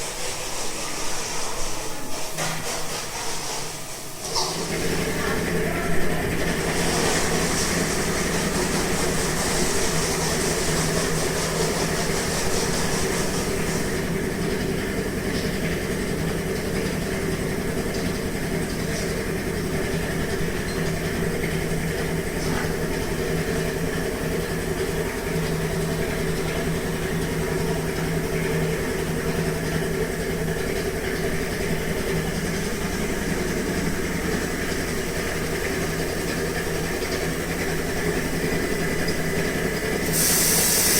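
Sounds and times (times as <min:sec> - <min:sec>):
high hiss: 0:40.1 - 0:40.9.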